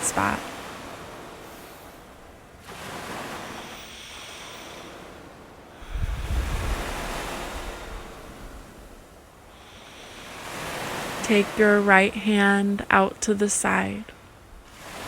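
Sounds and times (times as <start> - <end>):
ocean waves washing on shore: 0.0 - 15.0
wave surging with deep rumble: 3.3 - 10.3.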